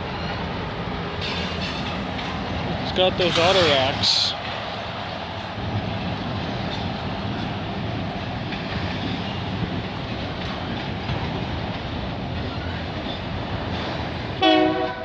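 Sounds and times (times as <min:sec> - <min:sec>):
freight train wheels rumbling: 0:00.0 - 0:15.0
train wheel clicks: 0:01.0 - 0:12.6.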